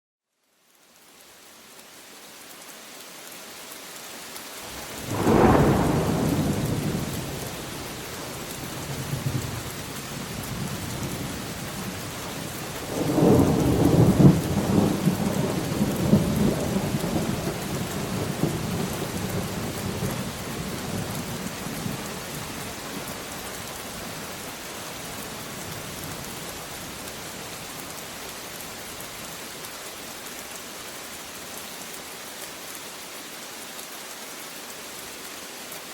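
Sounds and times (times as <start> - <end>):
steady rain: 0.3 - 35.9
thunder rumbling: 4.8 - 22.5.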